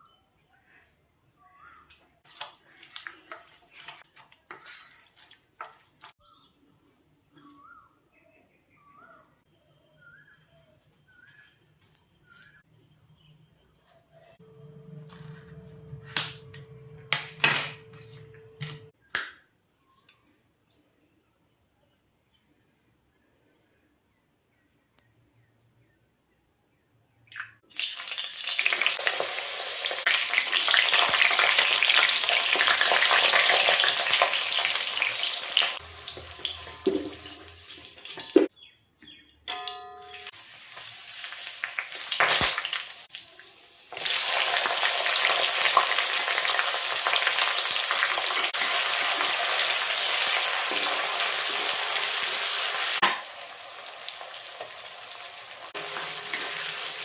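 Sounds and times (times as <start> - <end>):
stirring in a pan: 2.2 - 6.2
food sizzling in hot oil: 27.7 - 38.5, 39.7 - 57.0.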